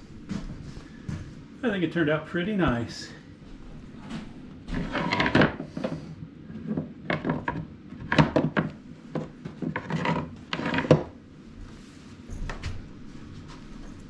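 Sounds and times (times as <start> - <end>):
wooden drawers sliding and knocking: 4.7 - 11.2.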